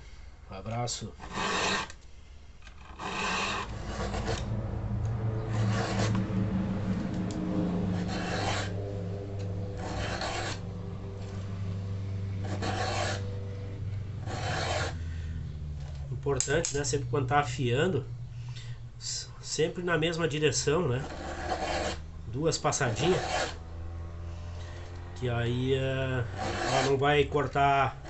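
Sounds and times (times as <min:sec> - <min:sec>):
steady low hum: 0:00.0 - 0:28.0
file rasping on chainsaw chain: 0:01.2 - 0:02.0, 0:02.8 - 0:04.4, 0:08.0 - 0:08.8, 0:09.8 - 0:10.7, 0:12.4 - 0:13.4, 0:14.2 - 0:15.0, 0:20.9 - 0:22.0, 0:22.8 - 0:23.6, 0:25.9 - 0:28.0.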